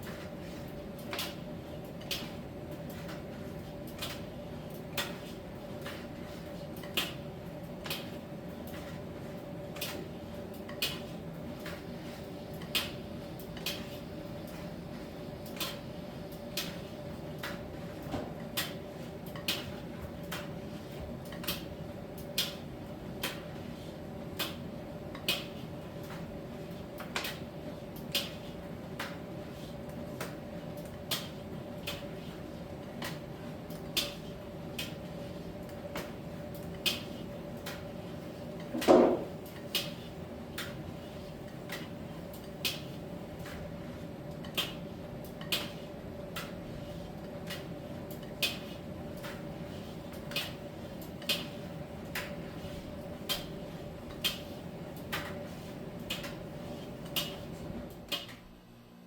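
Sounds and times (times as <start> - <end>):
light clicks of tumbling load: 24.3 - 58.4.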